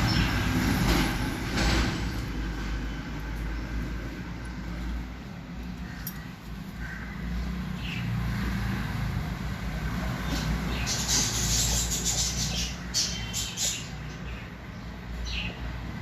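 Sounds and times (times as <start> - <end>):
parrot scratchy eating noises: 10.8 - 13.9.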